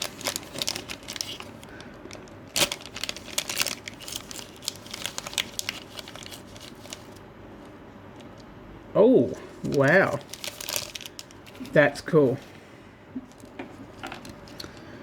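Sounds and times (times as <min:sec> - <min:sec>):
plastic wrapping crinkling: 0:00.0 - 0:08.5, 0:09.5 - 0:11.8.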